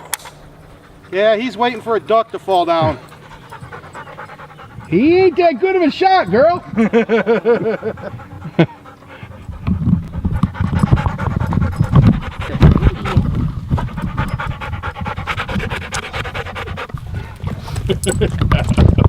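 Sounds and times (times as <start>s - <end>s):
dog panting: 0.4s - 18.3s
low thumping: 9.3s - 17.6s.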